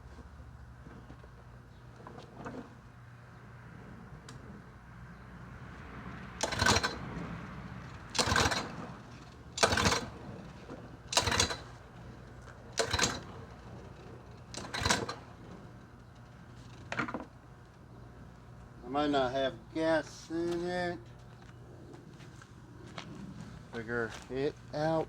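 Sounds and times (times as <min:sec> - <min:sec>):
engine cranking without firing: 0:06.0 - 0:18.2
recoil starter rope pulls: 0:06.4 - 0:17.3.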